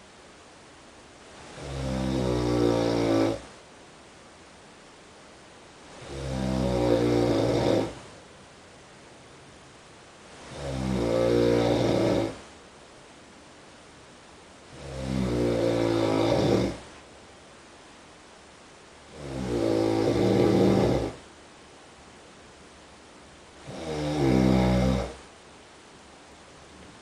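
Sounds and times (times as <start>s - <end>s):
faint steady hiss: 0.0s - 27.0s
muffled snoring through wall: 1.4s - 3.5s, 5.9s - 8.1s, 10.4s - 12.5s, 14.7s - 17.0s, 19.1s - 21.2s, 23.6s - 25.3s.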